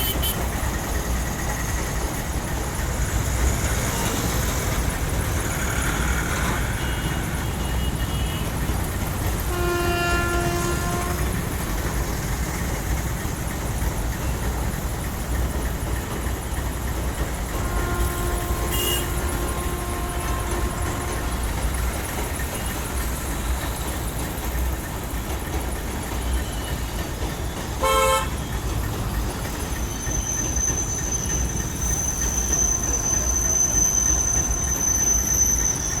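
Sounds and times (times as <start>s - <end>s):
vehicle horns honking: 0.0s - 0.5s, 6.6s - 8.6s, 9.4s - 11.6s, 17.6s - 21.6s, 27.8s - 28.4s
road traffic rumble: 0.0s - 36.0s.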